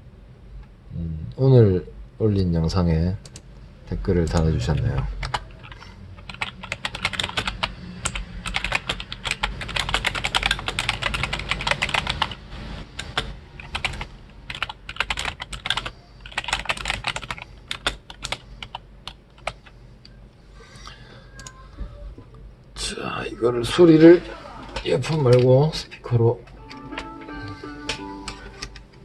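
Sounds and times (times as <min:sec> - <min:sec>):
computer keyboard typing: 0:05.2 - 0:12.4, 0:13.0 - 0:19.7.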